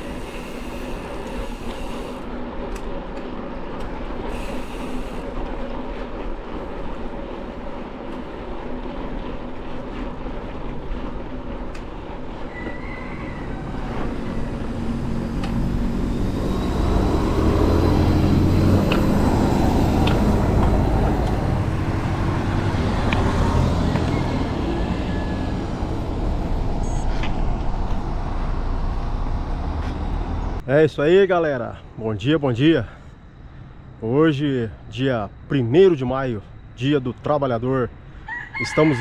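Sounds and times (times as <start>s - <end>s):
motor vehicle passing: 12.2s - 30.6s.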